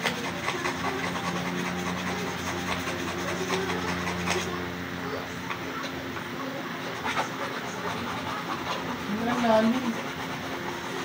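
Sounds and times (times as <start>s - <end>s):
rasping scraping strokes: 0.0s - 4.6s
steady low hum: 0.0s - 11.0s.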